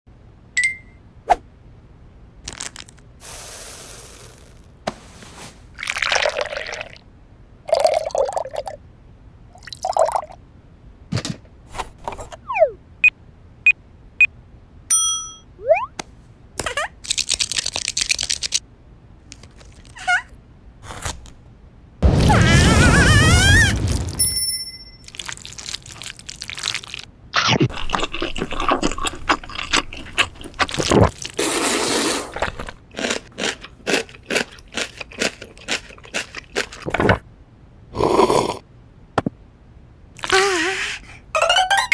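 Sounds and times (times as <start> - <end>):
loud warbling sound: 12.4 - 12.8, 15.6 - 15.9, 22.0 - 24.2
crunching bites and chewing: 25.0 - 37.0.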